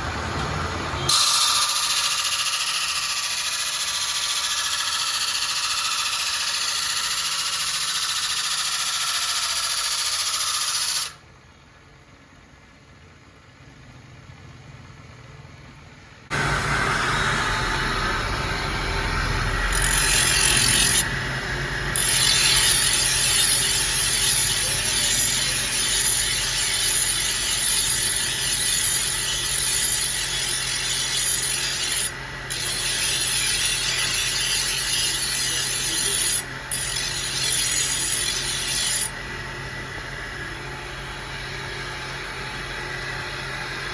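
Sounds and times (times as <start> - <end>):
metal rubbing on sickle blade: 19.8 - 21.1, 22.0 - 39.1.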